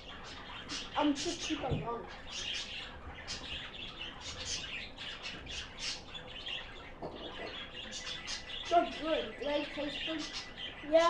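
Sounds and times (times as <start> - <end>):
birds chirping: 0.0 - 11.0
low background hum: 0.0 - 11.0.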